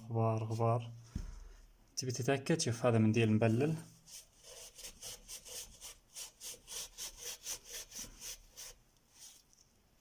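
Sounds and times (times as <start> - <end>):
wet tissue rubbing on surface: 3.4 - 9.6.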